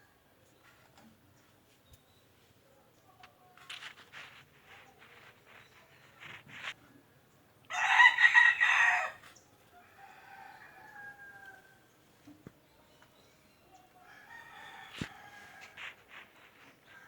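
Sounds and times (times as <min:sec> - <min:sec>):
rooster crowing: 0:07.7 - 0:11.8, 0:14.0 - 0:16.0.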